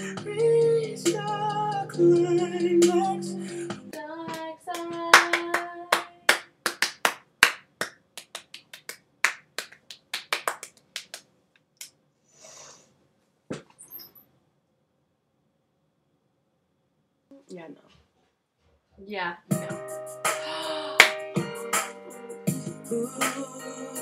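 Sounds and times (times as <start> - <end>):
music: 0.0 - 5.3, 19.5 - 24.0
sharp hand claps: 4.3 - 12.0, 21.0 - 21.2.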